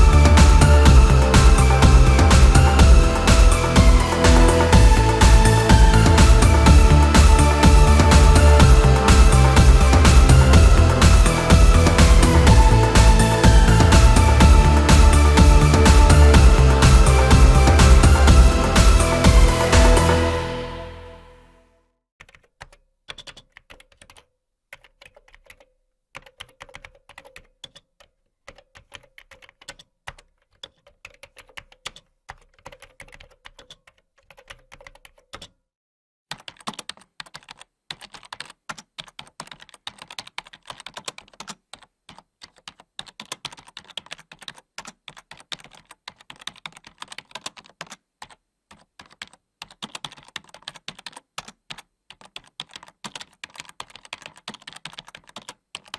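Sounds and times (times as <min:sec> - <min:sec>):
keyboard typing: 0:36.3 - 0:55.9.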